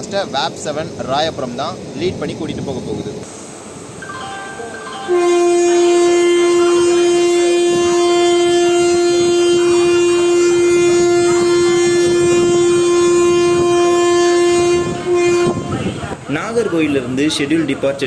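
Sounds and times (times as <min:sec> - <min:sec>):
locomotive horn blast: 0:04.4 - 0:16.2.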